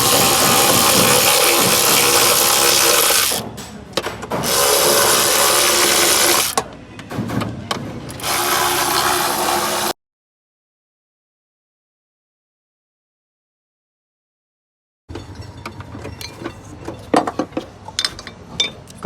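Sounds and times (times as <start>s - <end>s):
power tool running: 0.0s - 3.4s, 4.4s - 6.6s, 8.1s - 10.0s.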